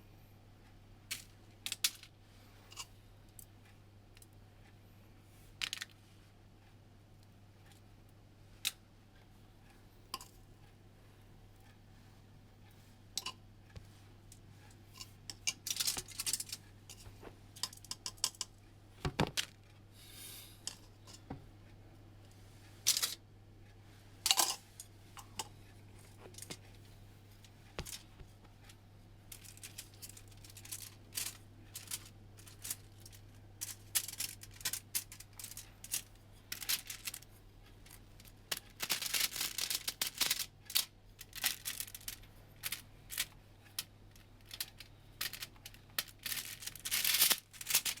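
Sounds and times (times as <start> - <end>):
steady low hum: 0.0 - 48.0
kitchen utensils clicking and clattering: 13.2 - 13.4, 15.0 - 18.5, 20.7 - 21.3, 22.9 - 23.2, 24.3 - 25.5.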